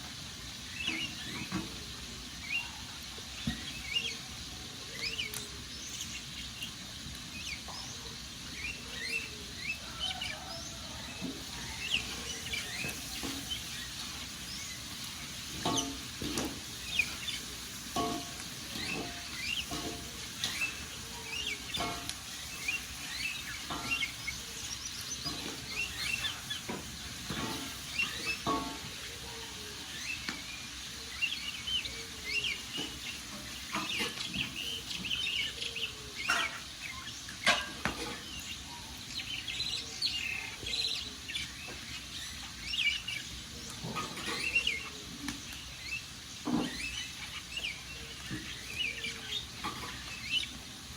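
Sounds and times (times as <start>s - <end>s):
small birds chirping: 0.0s - 50.9s
wood fire crackling and popping: 5.2s - 7.8s, 11.9s - 29.2s.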